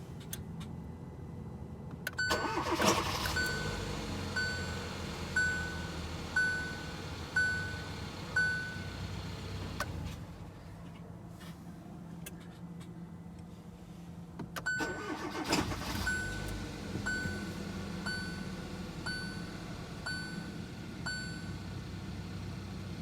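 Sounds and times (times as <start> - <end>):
engine running low hum: 0.0 - 23.0
dashboard warning chime: 2.2 - 9.2, 14.6 - 21.8
car engine starting: 2.2 - 10.5, 14.7 - 23.0.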